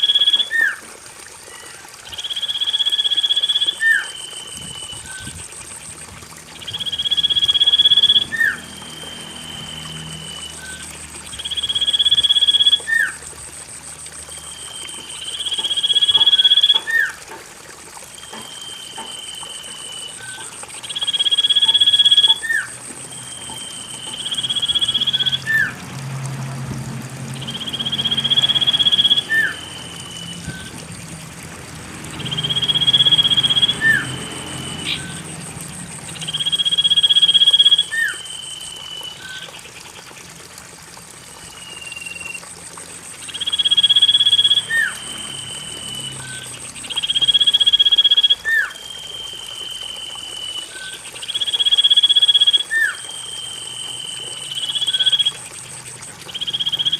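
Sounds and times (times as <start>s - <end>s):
bird whistling song: 0.0s - 0.8s, 1.5s - 5.4s, 6.6s - 13.2s, 14.4s - 17.2s, 18.2s - 25.7s, 27.4s - 30.8s, 32.2s - 35.2s, 36.1s - 39.5s, 41.4s - 42.4s, 43.3s - 55.4s, 56.3s - 56.9s
faint trickling water: 0.0s - 56.9s.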